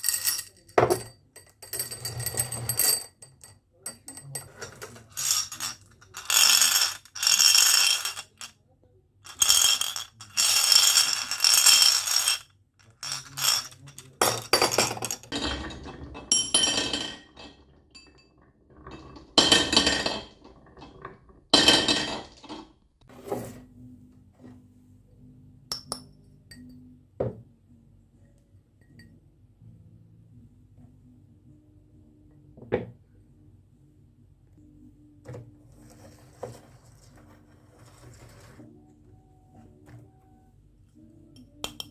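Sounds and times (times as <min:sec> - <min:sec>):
marbles rolling down wooden run: 0:05.1 - 0:08.5, 0:09.3 - 0:12.4, 0:13.0 - 0:15.3.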